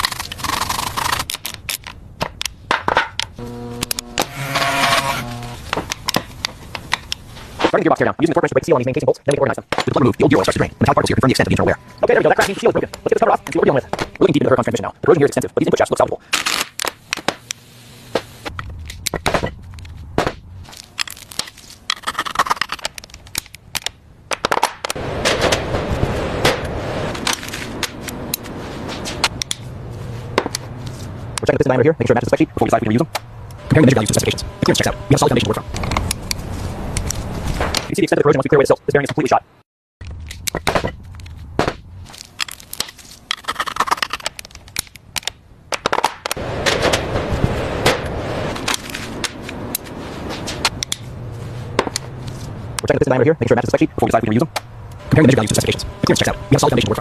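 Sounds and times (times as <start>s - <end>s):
dense crackling noise: 0.0s - 57.0s
low hum: 3.2s - 7.7s, 9.9s - 15.1s, 25.0s - 37.9s, 46.4s - 57.0s
metal parts clinking: 20.6s - 23.9s
low rumble: 46.4s - 52.8s.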